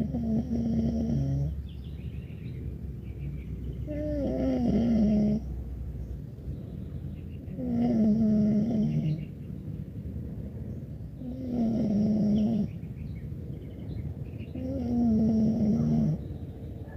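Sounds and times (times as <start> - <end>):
loud snoring: 0.0 - 1.6, 3.9 - 5.5, 7.5 - 9.2, 11.2 - 12.7, 14.6 - 16.2.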